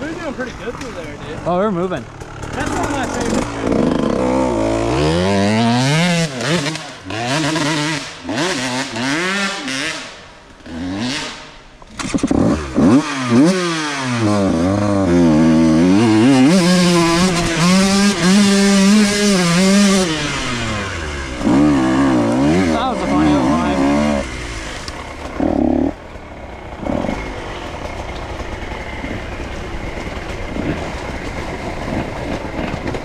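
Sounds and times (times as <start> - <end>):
dirt bike engine revving: 0.0 - 33.0.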